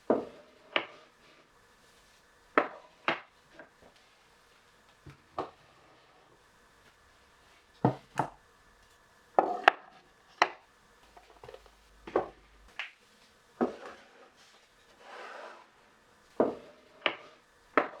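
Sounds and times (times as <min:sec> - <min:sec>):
hard objects knocking on wood: 0:17.8 - 0:18.0.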